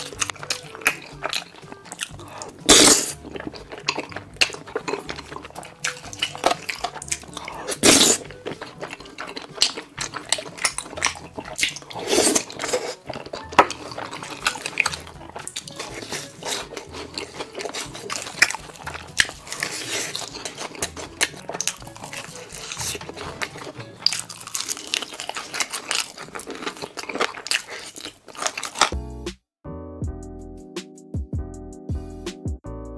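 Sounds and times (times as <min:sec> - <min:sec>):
crunching and chewing food: 0:00.0 - 0:29.0.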